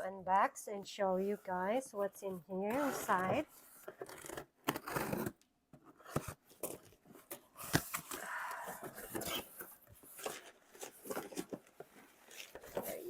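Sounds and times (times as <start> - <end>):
cardboard packaging rustling: 2.7 - 13.0.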